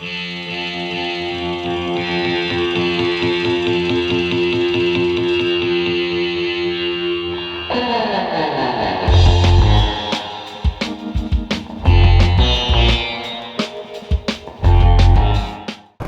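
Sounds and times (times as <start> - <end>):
effects-laden guitar chord: 0.0 - 15.7.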